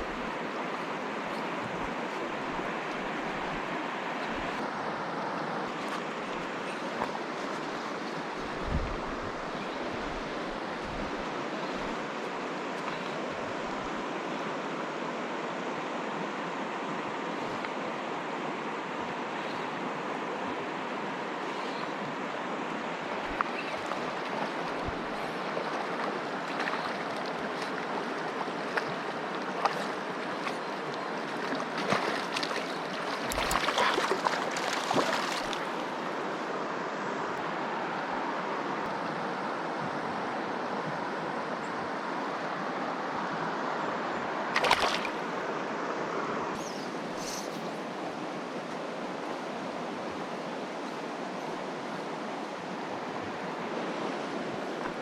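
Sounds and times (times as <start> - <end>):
creek water rushing: 0.0 - 55.0.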